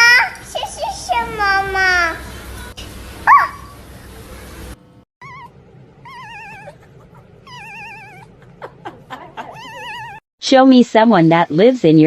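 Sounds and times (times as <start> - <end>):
cat meowing: 7.5 - 8.2, 9.6 - 10.2.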